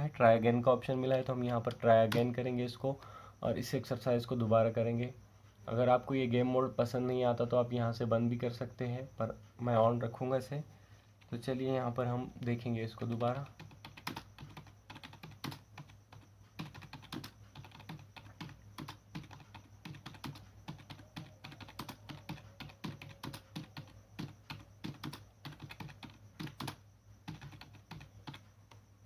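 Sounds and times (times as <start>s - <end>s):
computer keyboard typing: 1.0s - 2.4s, 12.4s - 28.8s.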